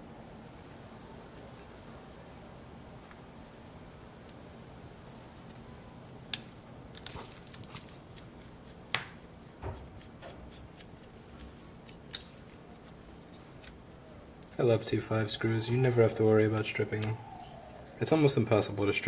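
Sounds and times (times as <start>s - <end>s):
small tools clicking and tapping: 6.3s - 13.8s.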